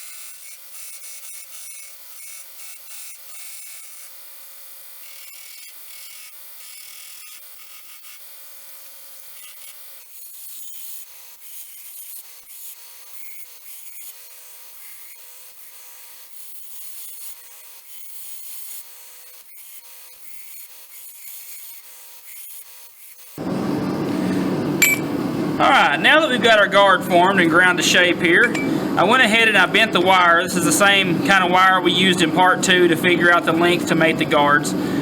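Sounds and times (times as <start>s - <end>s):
belt grinder grinding metal: 0.0s - 23.4s.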